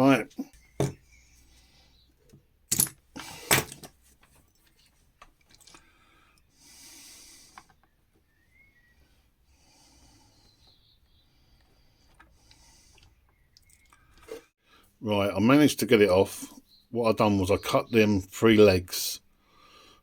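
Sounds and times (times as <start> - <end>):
loud knocks on bench: 0.8 - 1.0.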